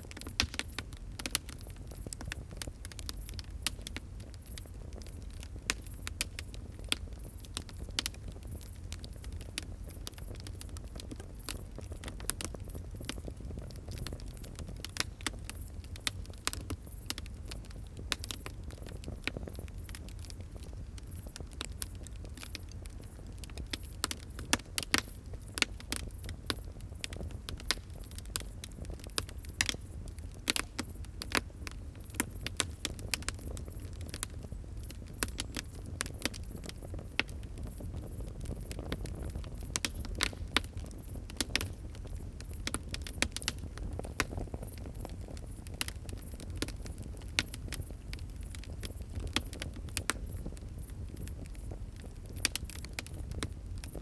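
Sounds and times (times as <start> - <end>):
low rumble of burning: 0.0 - 54.0
wood fire crackling: 0.0 - 54.0.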